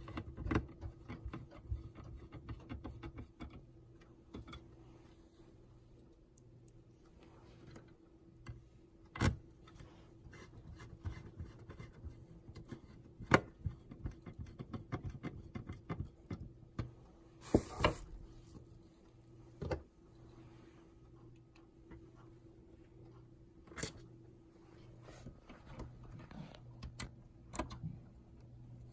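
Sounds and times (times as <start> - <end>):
small clicks and taps: 0.0 - 4.7, 10.7 - 17.0, 25.8 - 28.5
faint steady hum: 0.0 - 28.9.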